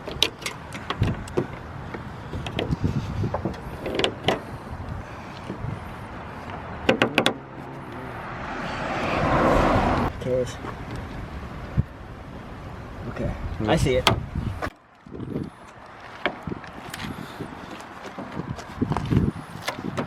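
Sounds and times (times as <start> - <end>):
tool clicks and knocks on car: 6.8 - 7.4.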